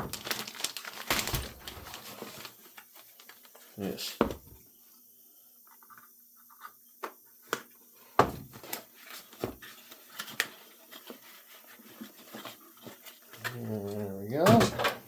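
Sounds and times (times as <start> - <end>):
packaging rustling and knocks: 0.0 - 3.6.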